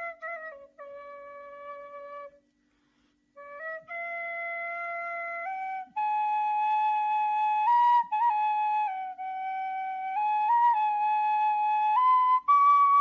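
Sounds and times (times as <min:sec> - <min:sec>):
flute playing long notes: 0:00.0 - 0:02.5, 0:03.4 - 0:13.0.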